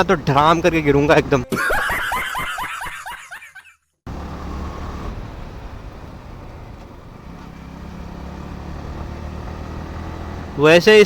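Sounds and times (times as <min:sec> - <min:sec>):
motorcycle engine cruising: 0:00.0 - 0:01.4, 0:04.1 - 0:11.0
road noise: 0:00.0 - 0:01.5, 0:04.1 - 0:11.0.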